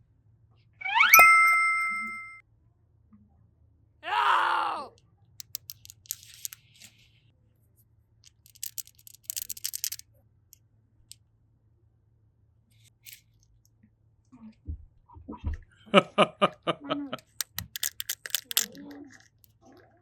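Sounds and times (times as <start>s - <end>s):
falling pitched tone: 0.8s - 2.4s.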